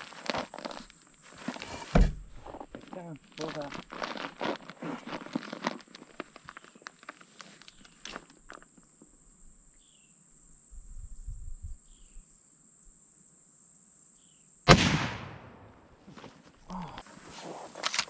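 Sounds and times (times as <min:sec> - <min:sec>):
rifle shot with echo: 0:14.7 - 0:15.8.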